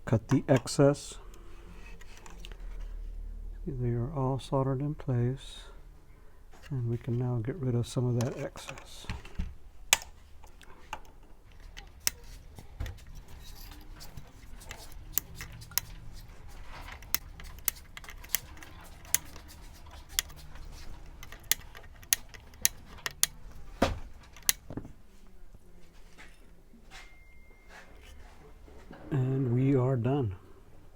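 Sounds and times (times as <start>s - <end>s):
wire cutters snipping leads: 11.6s - 23.6s.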